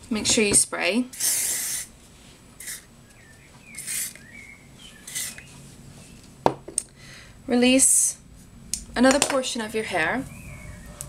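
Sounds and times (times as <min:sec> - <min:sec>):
aerosol hairspray hissing: 0:01.1 - 0:01.9, 0:02.6 - 0:02.9, 0:03.8 - 0:04.2, 0:05.1 - 0:05.5.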